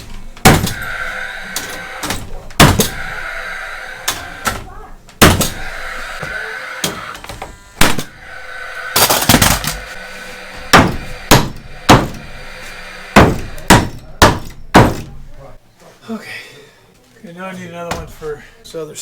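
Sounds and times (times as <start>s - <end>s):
rattling knock: 0.0s - 3.3s, 4.0s - 10.0s, 10.6s - 15.4s
hammer striking wood: 0.0s - 3.4s, 4.0s - 7.1s, 7.8s - 15.2s.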